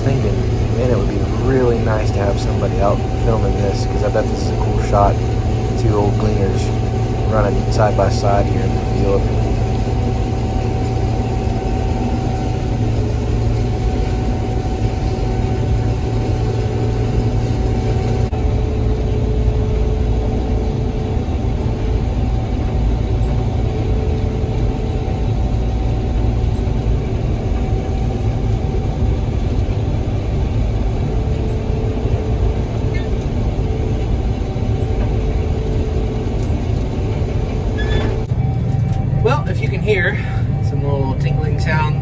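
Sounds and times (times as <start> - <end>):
combine harvester drone: 0.0 - 42.0
thin steady whine: 0.0 - 42.0.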